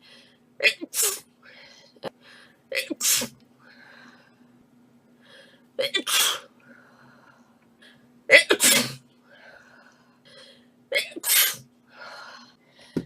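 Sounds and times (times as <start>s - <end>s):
person sneezing: 8.4s - 9.0s, 11.0s - 11.6s.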